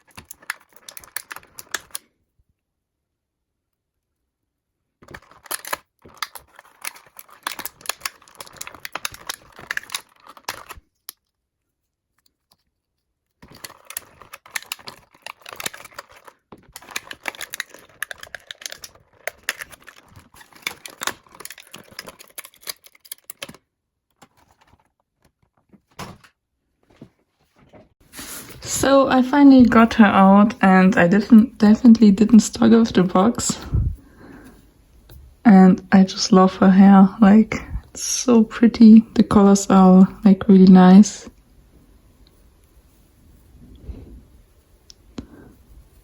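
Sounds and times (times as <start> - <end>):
packaging crackling and tearing: 0.0 - 2.0, 5.0 - 11.3, 13.3 - 26.3.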